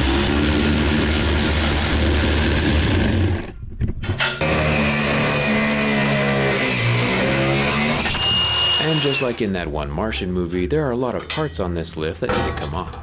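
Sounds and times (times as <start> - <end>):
machine motor running: 0.0 - 3.5.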